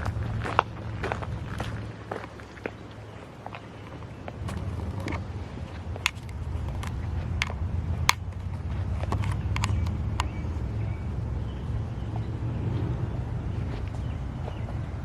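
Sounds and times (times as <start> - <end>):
footsteps crunching on rough ground: 0.0 - 10.9
low rumble: 0.0 - 15.0.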